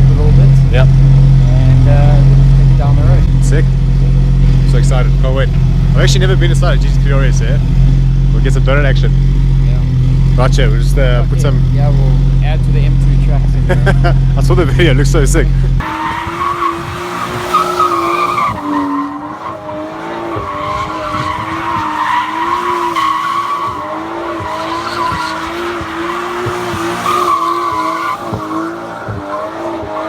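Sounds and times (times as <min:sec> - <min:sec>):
car engine revving high: 0:00.0 - 0:30.0
tyres squealing: 0:15.8 - 0:30.0.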